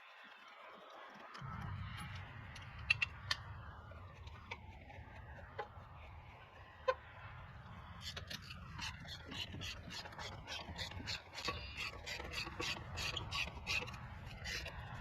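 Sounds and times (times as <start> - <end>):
hand tool rasping on lug nuts: 8.0 - 15.0.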